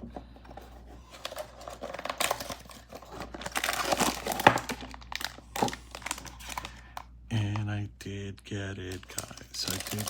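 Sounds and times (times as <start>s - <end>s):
packaging crinkling and tearing: 1.1s - 7.0s, 8.9s - 10.0s.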